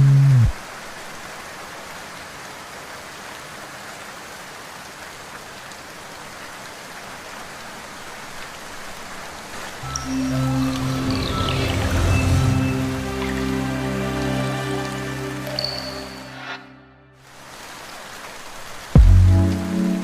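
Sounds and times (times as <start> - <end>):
steady rain hiss: 0.0 - 16.6, 17.2 - 20.0
low music: 9.8 - 17.2, 19.0 - 20.0.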